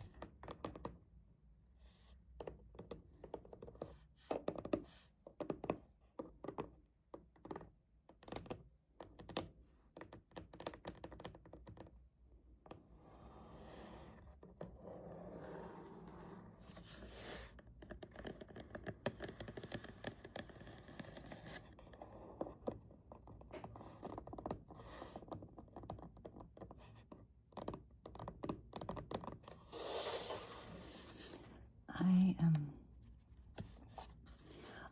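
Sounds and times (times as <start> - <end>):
fingertips tapping cardboard: 22.6 - 29.6
fingernails scratching cardboard: 27.6 - 31.5.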